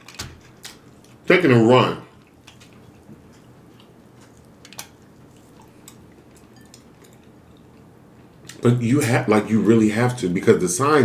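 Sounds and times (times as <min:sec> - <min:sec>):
low room hum: 0:00.0 - 0:11.0
chewing food: 0:02.2 - 0:08.6.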